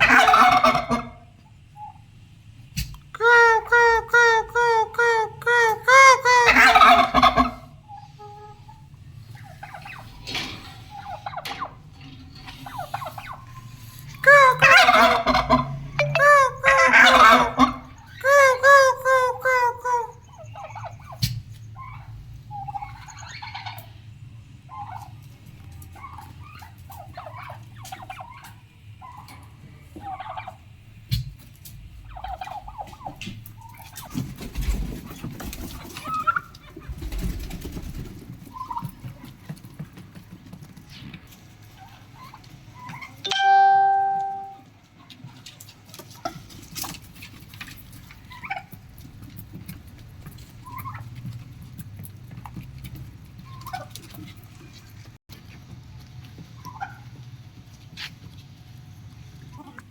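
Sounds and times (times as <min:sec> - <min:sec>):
turkey gobbling: 0:00.0 - 0:24.0, 0:24.7 - 0:31.4, 0:32.0 - 0:39.7, 0:46.1 - 0:49.0, 0:49.6 - 0:54.8, 0:56.5 - 0:57.2
turkeys calling: 0:00.0 - 0:44.6, 0:46.0 - 0:59.8.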